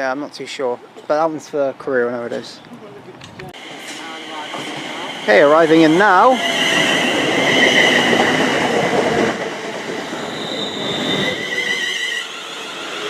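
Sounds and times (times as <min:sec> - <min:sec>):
train rumble: 0:02.3 - 0:13.0
high-pitched wheel squealing: 0:10.0 - 0:13.0.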